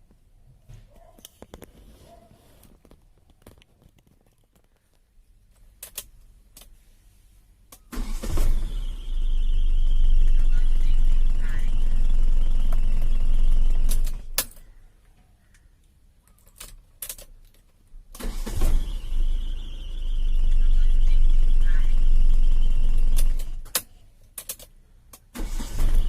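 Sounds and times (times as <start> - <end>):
car engine starting: 7.8 - 14.5, 18.1 - 24.0, 25.2 - 26.0
car engine running: 8.0 - 14.4, 18.2 - 23.7.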